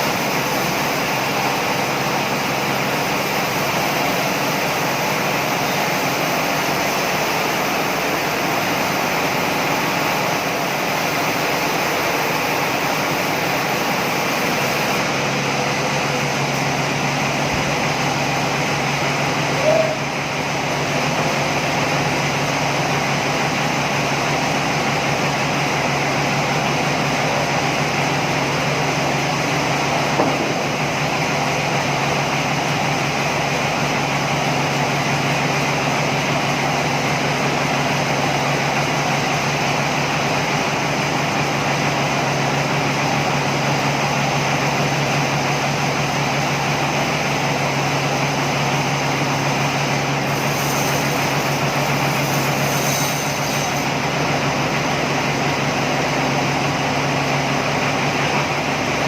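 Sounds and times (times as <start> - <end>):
sawmill machinery humming: 0.0 - 59.0
small knock: 30.2 - 30.6.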